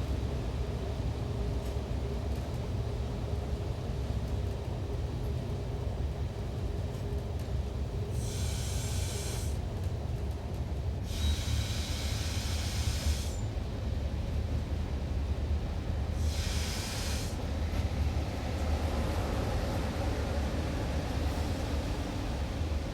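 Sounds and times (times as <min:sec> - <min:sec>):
air hissing: 0:08.2 - 0:09.6, 0:11.1 - 0:13.5, 0:16.2 - 0:17.4.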